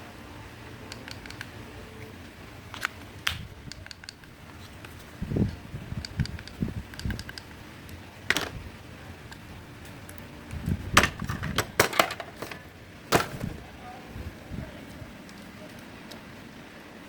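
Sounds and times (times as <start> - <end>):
small hard parts clicking: 3.7 - 8.6, 10.1 - 13.5
louder knocks: 11.0 - 13.6.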